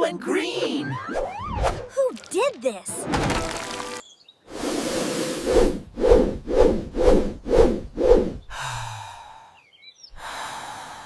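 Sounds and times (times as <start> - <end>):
cartoon swishing strokes: 4.5 - 8.4.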